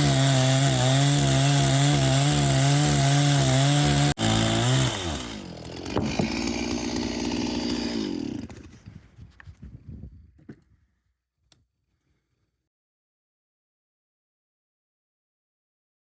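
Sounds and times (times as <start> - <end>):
chainsaw cutting wood: 0.0 - 9.1
knocks: 5.9 - 6.4.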